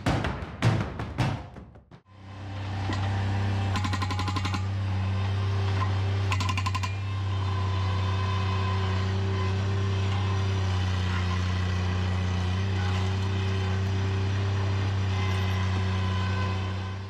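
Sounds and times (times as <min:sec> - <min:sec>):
engine humming: 0:02.1 - 0:17.0.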